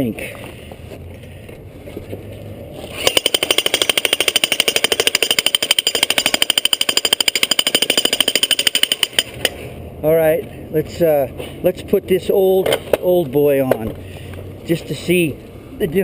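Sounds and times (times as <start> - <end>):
electric jackhammer breaking rock: 2.9 - 9.5.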